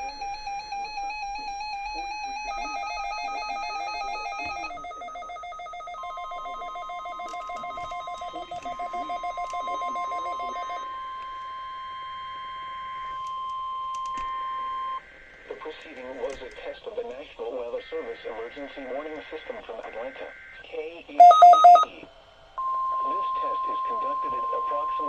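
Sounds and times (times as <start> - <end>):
steady single-pitch alarm tone: 0.0 - 15.1, 22.6 - 25.0.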